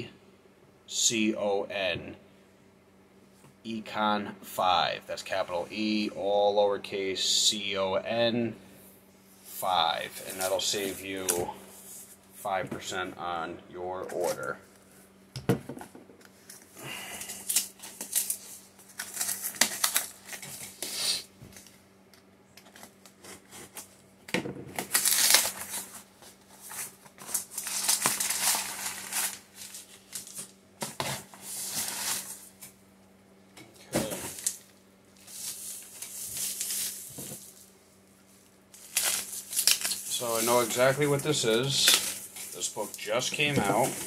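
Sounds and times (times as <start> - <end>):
faint steady hum: 0.0 - 44.0
cardboard rustling and scraping: 25.0 - 32.6, 38.8 - 44.0.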